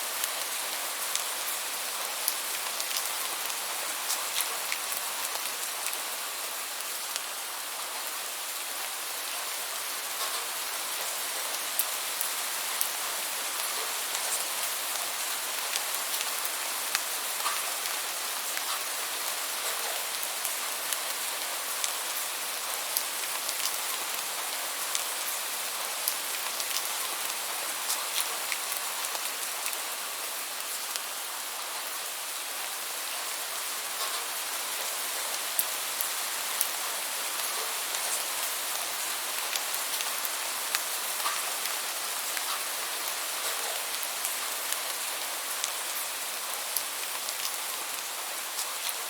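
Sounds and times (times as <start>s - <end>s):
steady rainfall hiss: 0.0s - 49.0s.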